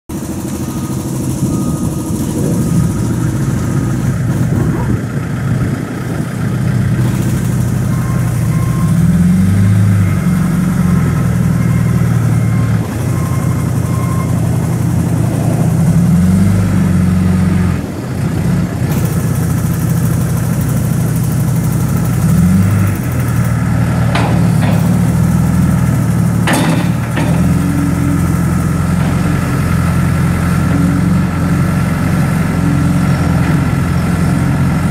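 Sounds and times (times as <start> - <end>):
diesel engine idling: 0.1 - 34.9
sharp knocks: 24.1 - 25.6, 26.4 - 28.4.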